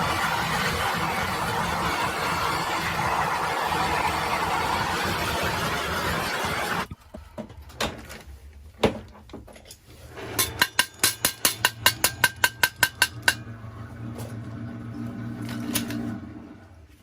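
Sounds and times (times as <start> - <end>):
loud steady rushing noise: 0.0 - 6.9
scattered clicks and knocks: 10.4 - 13.5.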